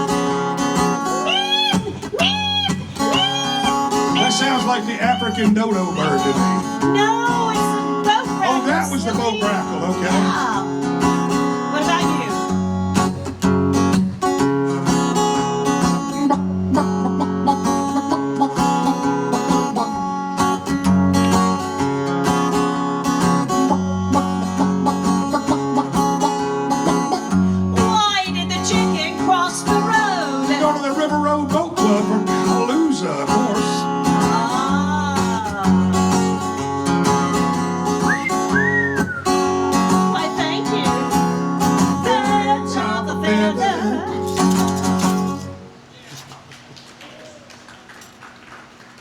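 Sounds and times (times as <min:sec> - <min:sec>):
strummed acoustic guitar: 0:00.0 - 0:46.3
gliding whistle-like calls: 0:01.2 - 0:06.6, 0:38.0 - 0:39.5.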